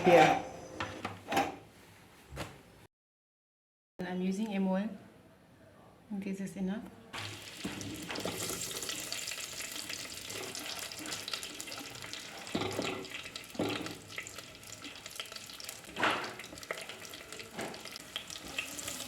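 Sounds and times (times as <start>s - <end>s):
knocks or scrapes in pan: 7.2s - 8.9s, 10.2s - 14.4s, 15.8s - 18.6s
pork frying in hot oil: 7.2s - 19.0s.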